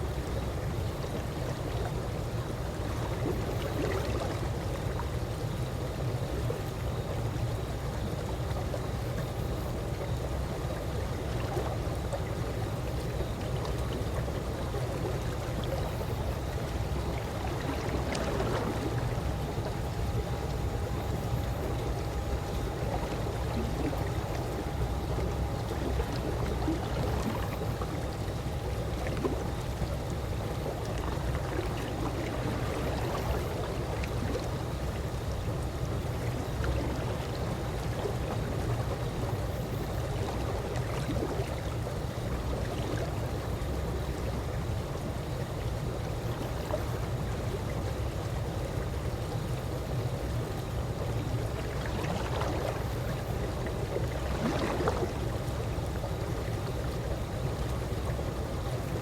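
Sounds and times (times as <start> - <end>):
pool water lapping: 0.0 - 59.0.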